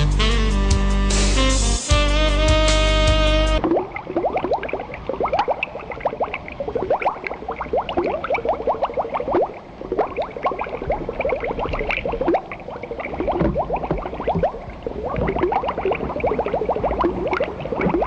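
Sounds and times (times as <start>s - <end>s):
river water churning and splashing: 3.6s - 18.0s.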